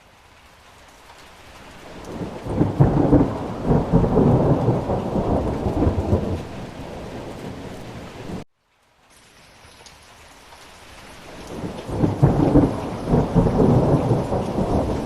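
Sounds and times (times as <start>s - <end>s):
heavy rain hissing: 0.0s - 15.0s
thunder rolling: 2.0s - 8.4s, 11.5s - 15.0s.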